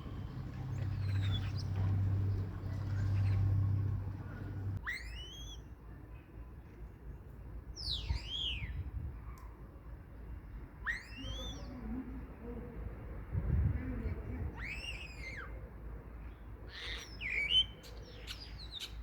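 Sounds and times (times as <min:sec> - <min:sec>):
low hum: 0:00.0 - 0:04.8
starling whistled calls: 0:00.0 - 0:05.6, 0:10.8 - 0:11.7, 0:14.6 - 0:15.5.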